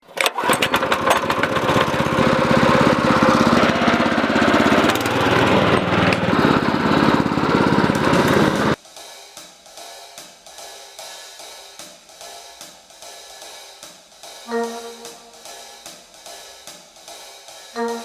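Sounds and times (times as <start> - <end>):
lawn mower engine running: 0.0 - 8.8
sharp clicks: 0.0 - 8.8.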